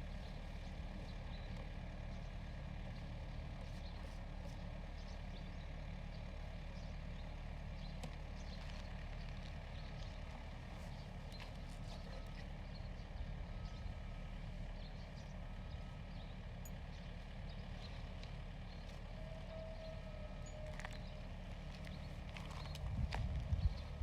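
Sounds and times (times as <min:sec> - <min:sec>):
diesel engine of heavy machinery: 0:00.0 - 0:24.0
light clinks and ticks: 0:16.6 - 0:16.8.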